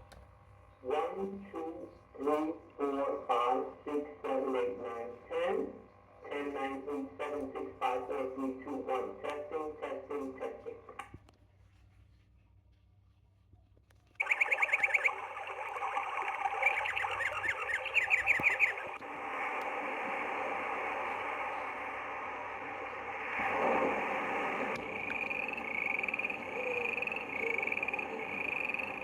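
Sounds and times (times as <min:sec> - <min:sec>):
bird-like chirps: 0:14.2 - 0:19.0, 0:25.0 - 0:29.0
steady rushing hiss: 0:15.6 - 0:29.0.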